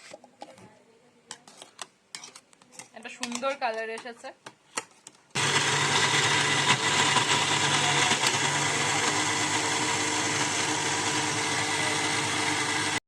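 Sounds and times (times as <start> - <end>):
mixer grinder running: 5.4 - 13.0.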